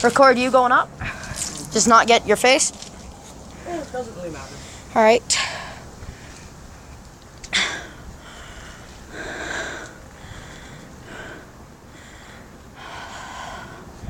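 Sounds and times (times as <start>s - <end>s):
breathy exhalations: 3.5s - 6.5s, 7.5s - 14.0s.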